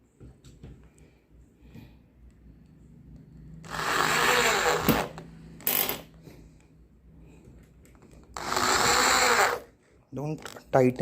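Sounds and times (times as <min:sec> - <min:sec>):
power drill driving a screw: 0:03.6 - 0:06.1, 0:08.4 - 0:09.7.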